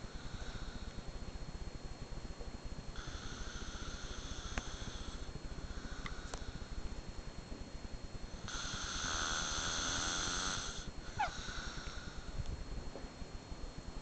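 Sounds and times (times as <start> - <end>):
man snoring: 0.0 - 0.9, 3.0 - 6.7, 8.4 - 12.2
long hissing breath: 0.0 - 1.0, 3.0 - 6.9, 8.4 - 12.5.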